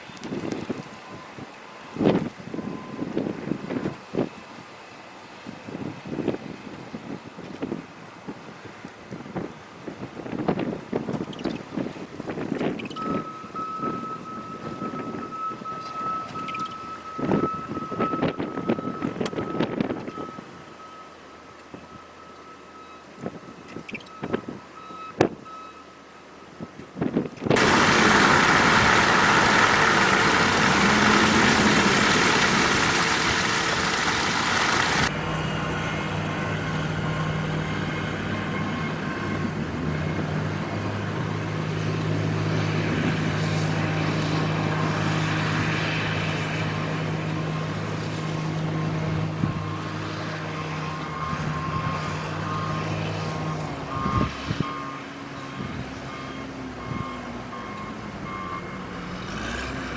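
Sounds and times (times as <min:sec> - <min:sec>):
reversing alarm beeping: 0:13.0 - 0:23.2, 0:48.8 - 0:59.6
rushing blizzard wind: 0:27.6 - 0:50.2
truck engine running: 0:27.6 - 0:54.1.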